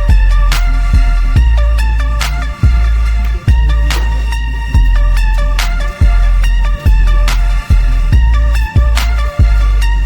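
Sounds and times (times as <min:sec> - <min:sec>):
electronic hip-hop beat: 0:00.0 - 0:10.0.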